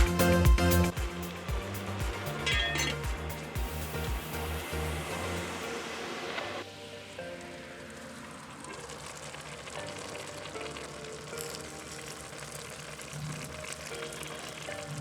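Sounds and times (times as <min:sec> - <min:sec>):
background music: 0:00.0 - 0:08.9
food sizzling in hot oil: 0:00.3 - 0:15.0.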